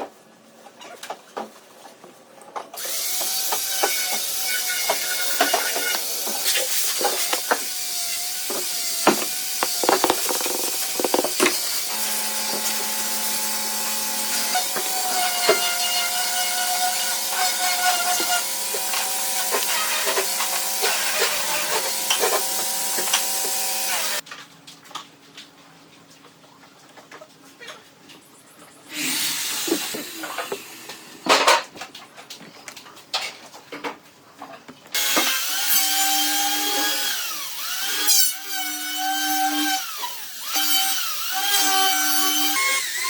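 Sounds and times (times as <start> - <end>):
power tool motor whining: 4.8 - 16.1
wood knocking: 7.0 - 7.7, 8.5 - 11.9.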